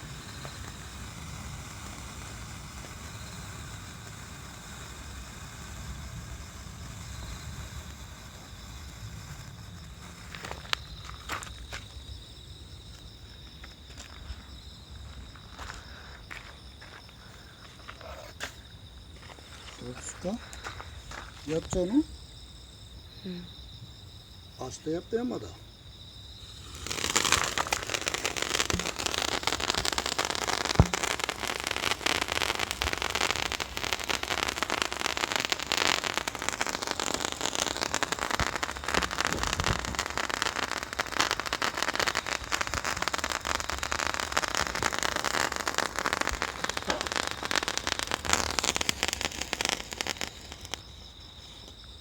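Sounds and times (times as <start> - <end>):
firework sparks hissing: 0.0 - 23.4, 24.6 - 52.0
sharp pop: 30.6 - 31.2, 38.4 - 40.0, 46.2 - 49.0.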